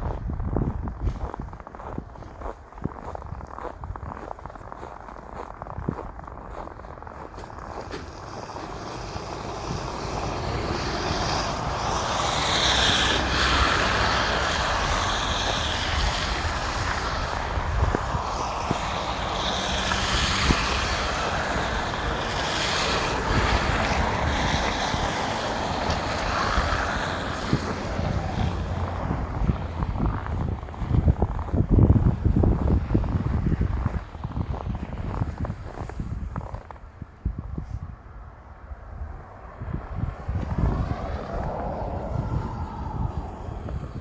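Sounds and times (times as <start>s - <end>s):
low traffic rumble: 0.0s - 44.0s
car tyres hissing: 7.5s - 31.2s, 40.5s - 44.0s.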